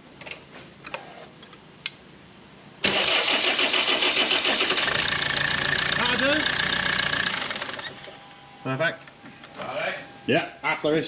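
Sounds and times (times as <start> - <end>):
engine running: 2.9 - 8.2.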